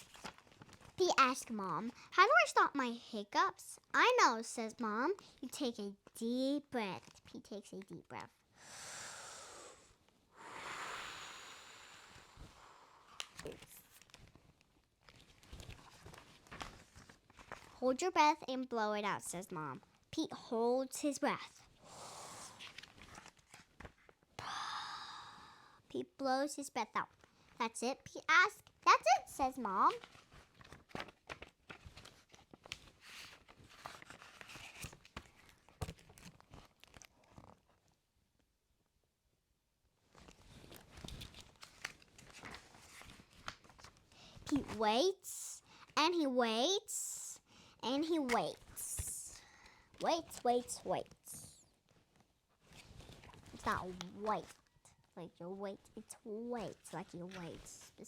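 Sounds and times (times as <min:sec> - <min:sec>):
faint clicks and rustles: 0:00.0 - 0:02.0, 0:13.1 - 0:17.8, 0:22.6 - 0:24.4, 0:27.0 - 0:27.6, 0:28.5 - 0:38.1, 0:40.0 - 0:44.8, 0:48.2 - 0:55.2
child taking deep breath: 0:08.6 - 0:13.0, 0:21.8 - 0:22.6, 0:49.4 - 0:50.0.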